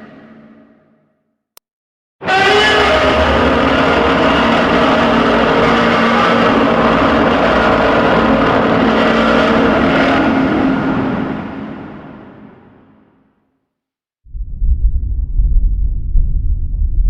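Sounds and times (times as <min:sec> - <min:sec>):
loud rushing monster roar: 0:02.2 - 0:12.8.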